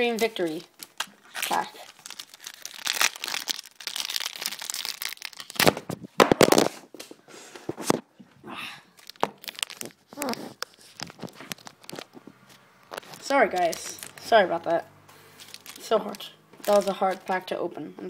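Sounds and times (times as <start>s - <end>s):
foil wrapper crinkling and tearing: 0.0s - 6.8s, 8.9s - 14.4s, 15.2s - 17.5s.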